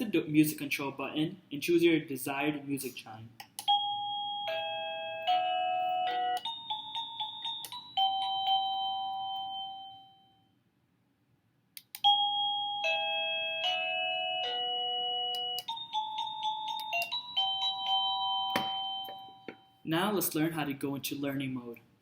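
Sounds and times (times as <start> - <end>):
doorbell chime tunes: 3.7 - 10.5, 12.0 - 19.8.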